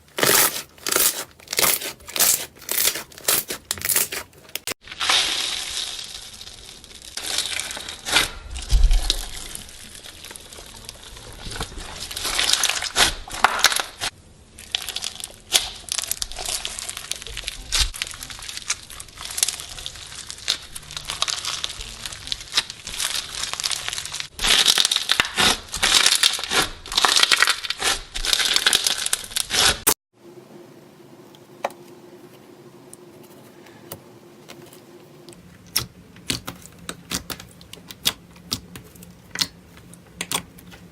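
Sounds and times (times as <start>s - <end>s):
slime crackling and popping: 0.1s - 30.0s, 35.6s - 40.9s
faint hum: 30.2s - 40.9s.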